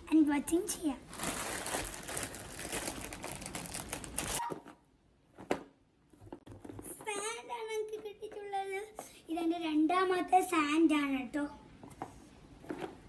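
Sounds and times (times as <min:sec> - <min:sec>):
packaging crinkling and rustling: 0:01.0 - 0:04.4.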